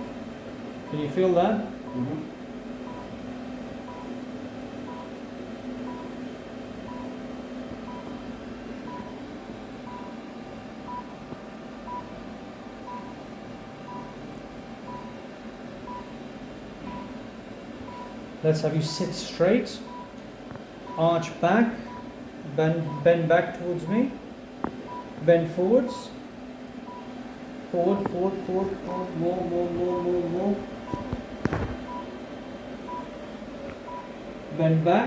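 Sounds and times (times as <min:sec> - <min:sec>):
steady hum: 0:00.0 - 0:35.0
laser unit beeping: 0:00.9 - 0:03.2, 0:22.7 - 0:24.2, 0:27.8 - 0:31.2.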